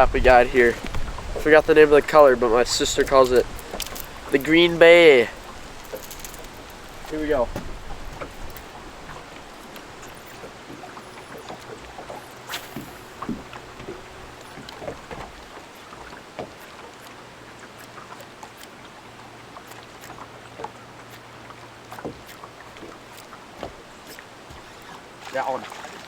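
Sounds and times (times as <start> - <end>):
water lapping against boat hull: 0.0 - 26.0
wind: 0.0 - 26.0
small clicks and knocks: 3.0 - 4.6, 5.8 - 15.3.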